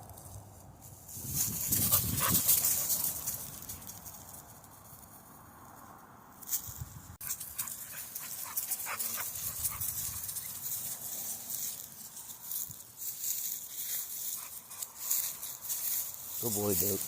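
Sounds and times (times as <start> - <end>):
dogs scuffling: 1.2 - 4.9, 7.2 - 17.0.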